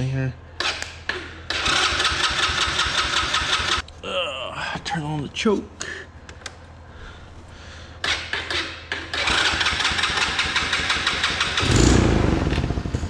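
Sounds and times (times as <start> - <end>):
small engine cranking and sputtering: 1.5 - 3.8, 8.0 - 13.0.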